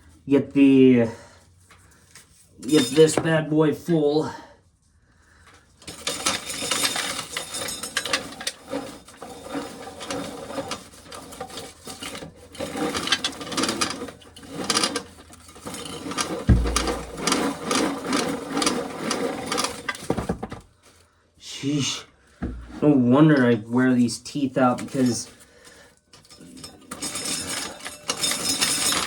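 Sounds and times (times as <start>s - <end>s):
corn sheller rasping clatter: 5.8s - 20.2s, 26.5s - 29.0s
kernels rattling: 15.6s - 18.3s
dull thump: 16.5s - 17.3s, 22.4s - 22.9s.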